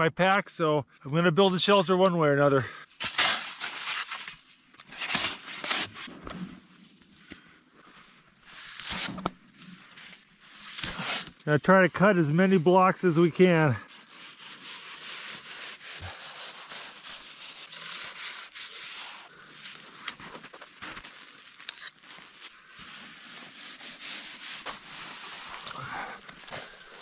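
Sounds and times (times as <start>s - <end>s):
blade scraping through packed snow: 3.0s - 6.9s, 9.7s - 27.0s.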